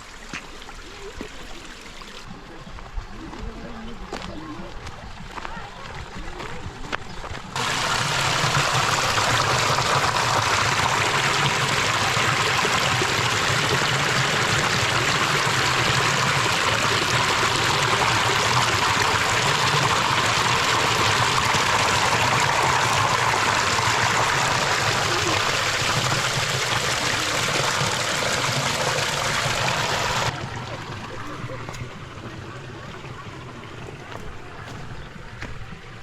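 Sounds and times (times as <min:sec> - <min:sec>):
stream water rushing: 0:07.6 - 0:36.0.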